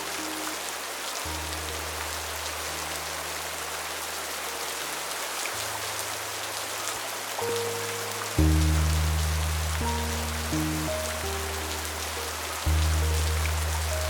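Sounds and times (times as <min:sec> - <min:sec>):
rain drops ticking: 0:00.0 - 0:14.0
rain hiss: 0:00.0 - 0:14.0
soft background music chords: 0:07.4 - 0:14.0.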